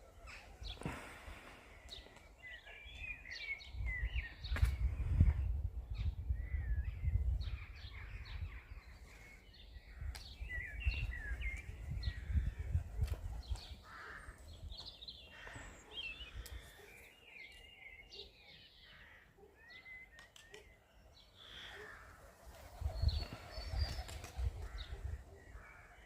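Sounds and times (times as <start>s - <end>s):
songbirds chirping and warbling: 0.0s - 26.0s
wind rumble on microphone: 3.6s - 8.8s, 9.9s - 13.8s, 22.6s - 25.3s.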